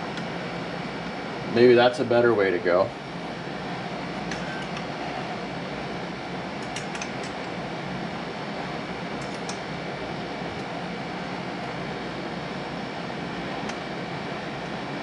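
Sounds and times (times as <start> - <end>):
fan humming: 0.0 - 15.0
screwdrivers clicking: 6.6 - 7.4.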